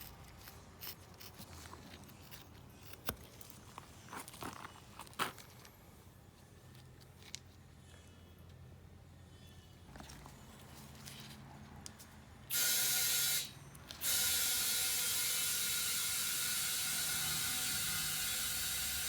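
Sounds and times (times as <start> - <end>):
air compressor running: 12.5 - 19.0.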